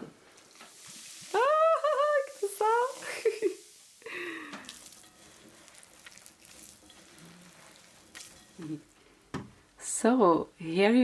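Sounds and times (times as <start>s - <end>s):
stirring and scraping dough: 2.2s - 3.8s, 4.6s - 9.8s.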